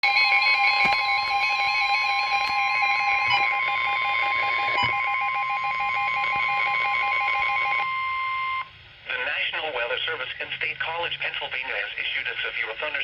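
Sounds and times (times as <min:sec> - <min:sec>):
loud steady electronic alarm tone: 0:00.0 - 0:08.7.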